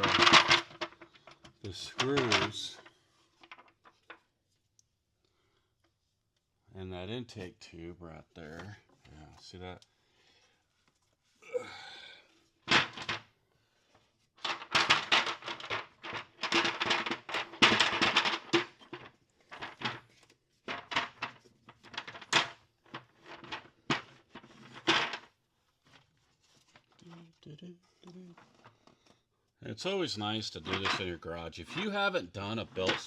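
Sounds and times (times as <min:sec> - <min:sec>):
metal cover clattering and scraping: 0:00.0 - 0:01.0, 0:14.4 - 0:20.0, 0:30.6 - 0:31.1.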